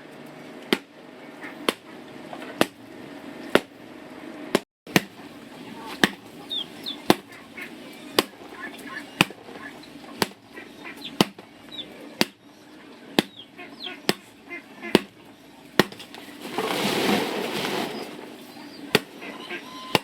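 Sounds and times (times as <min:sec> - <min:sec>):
chickens clucking: 0:05.0 - 0:20.0
chopping strokes: 0:15.8 - 0:16.2
rustling noise: 0:16.0 - 0:19.2.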